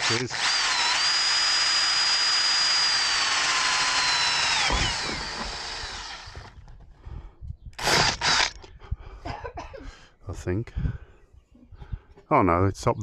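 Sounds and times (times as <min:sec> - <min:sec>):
power drill whining: 0:00.0 - 0:06.7, 0:07.8 - 0:08.7.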